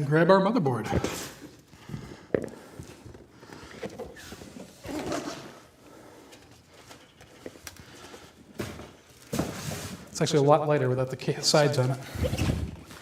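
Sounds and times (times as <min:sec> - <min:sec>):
rustling and scraping of parts: 0:00.9 - 0:10.3.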